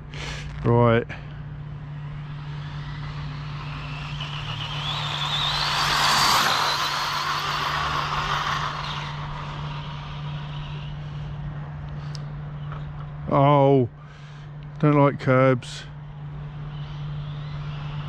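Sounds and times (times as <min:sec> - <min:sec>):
steady low hum: 0:00.0 - 0:18.0
electric motor whining: 0:01.4 - 0:12.0.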